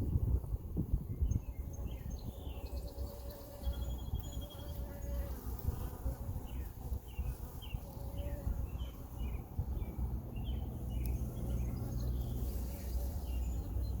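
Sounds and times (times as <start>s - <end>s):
honeybees humming: 0.5s - 14.0s
small bird chirping: 1.1s - 5.3s, 6.5s - 14.0s
low outdoor rumble: 6.9s - 14.0s.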